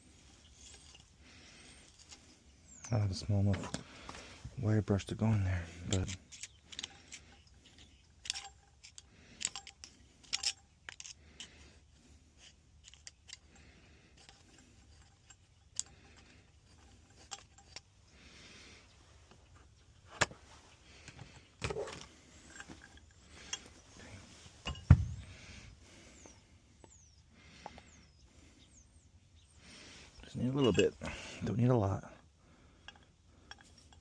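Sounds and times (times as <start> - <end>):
metal tools clicking and tapping: 5.7 - 11.6, 12.4 - 17.9, 21.0 - 23.8, 24.6 - 25.3, 30.3 - 31.5, 32.8 - 34.0.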